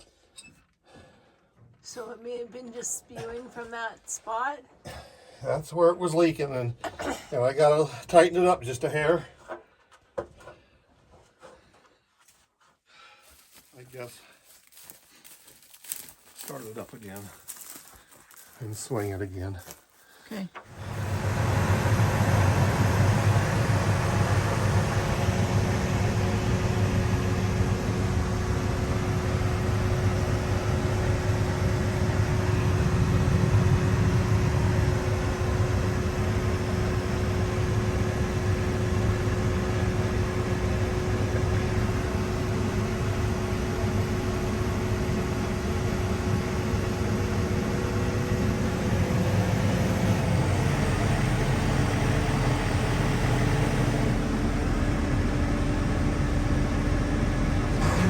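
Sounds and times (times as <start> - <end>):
machinery engine droning: 20.5 - 58.0
steady whine: 20.6 - 58.0.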